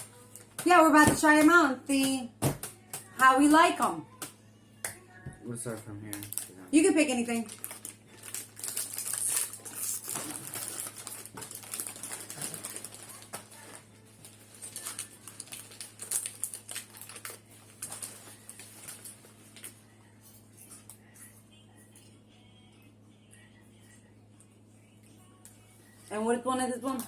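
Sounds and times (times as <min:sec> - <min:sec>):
plastic packaging crinkling: 0:06.1 - 0:19.8.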